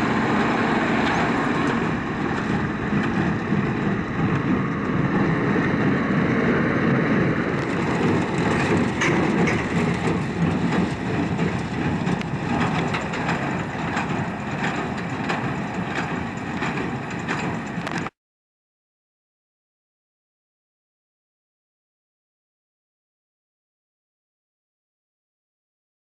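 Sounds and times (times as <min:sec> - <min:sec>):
machinery clattering and rattling: 0:00.0 - 0:18.1
tractor engine running: 0:00.0 - 0:18.1.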